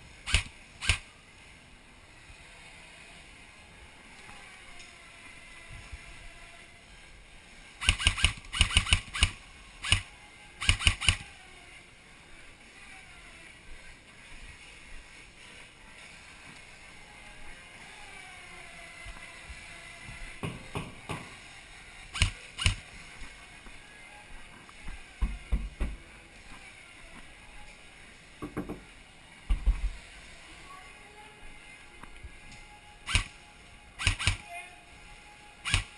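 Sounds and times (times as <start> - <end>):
airsoft gun shots: 7.8 - 11.2, 34.0 - 34.4.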